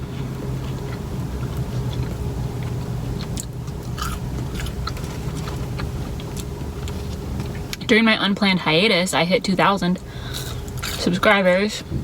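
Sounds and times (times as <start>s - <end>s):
person chewing food: 0.0s - 7.8s, 10.3s - 11.1s
steady low hum: 0.0s - 12.0s.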